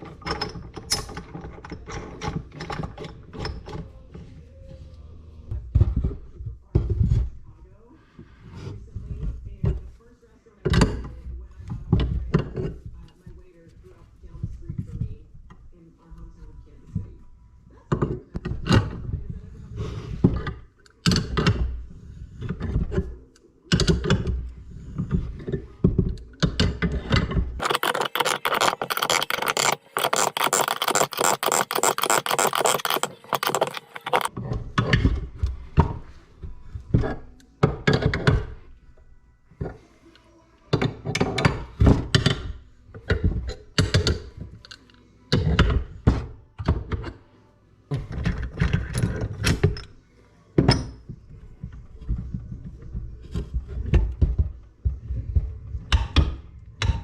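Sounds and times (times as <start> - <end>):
rasping noise: 26.9 - 34.4
metal parts clunking: 27.6 - 34.3.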